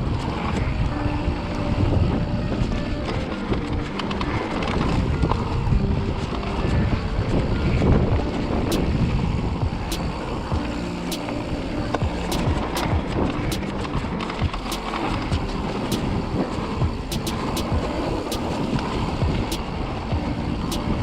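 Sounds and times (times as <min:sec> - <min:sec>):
wind on microphone: 0:00.0 - 0:21.0
sharp ticking: 0:08.2 - 0:21.0.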